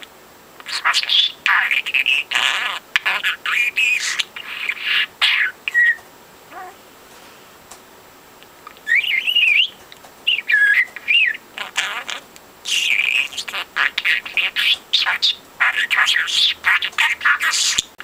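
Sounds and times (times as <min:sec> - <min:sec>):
budgerigar chattering: 0:10.3 - 0:17.9.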